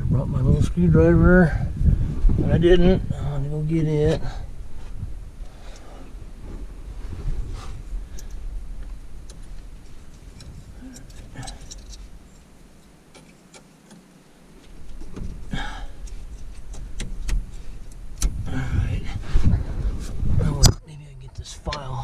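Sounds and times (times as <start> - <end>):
rustle: 3.4 - 22.0
clicks of small metal parts: 9.3 - 12.5.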